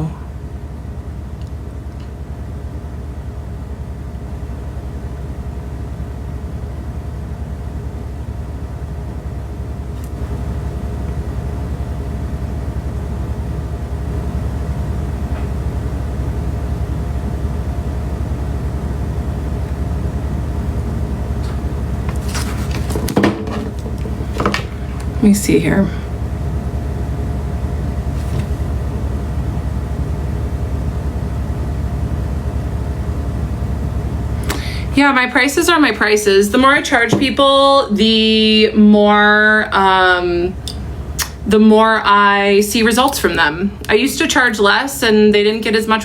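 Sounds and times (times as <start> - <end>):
faint steady hums: 0.0 - 46.0
person speaking: 24.1 - 26.2, 34.5 - 40.7, 41.4 - 46.0.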